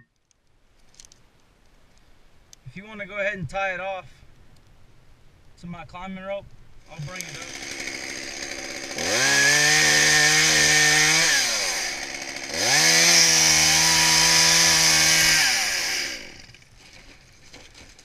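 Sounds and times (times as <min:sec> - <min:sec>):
chainsaw revving: 0:06.8 - 0:16.7.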